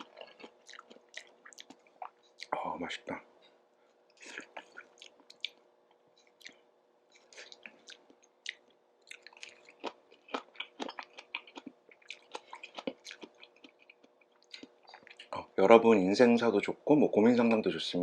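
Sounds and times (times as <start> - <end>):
chewing with wet crunches: 0.0 - 2.6, 4.2 - 5.6, 7.2 - 15.4.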